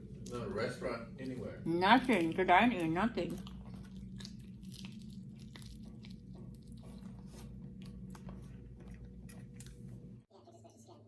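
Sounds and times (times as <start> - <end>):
person chewing crispy chicken: 3.4 - 10.3.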